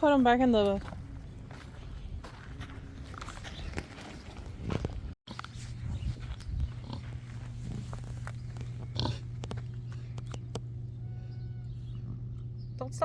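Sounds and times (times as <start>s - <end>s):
pig grunting: 6.7s - 8.0s, 8.8s - 9.4s.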